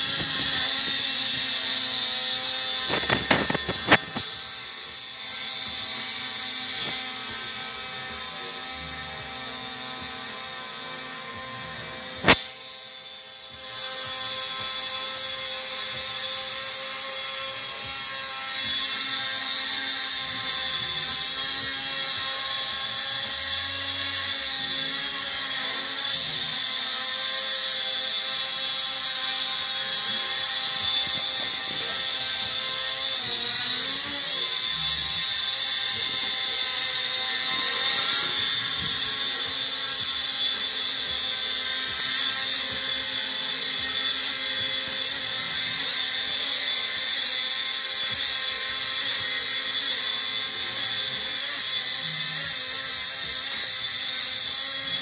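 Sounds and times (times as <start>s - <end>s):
drone propellers whining: 0.0s - 9.5s, 23.3s - 49.7s.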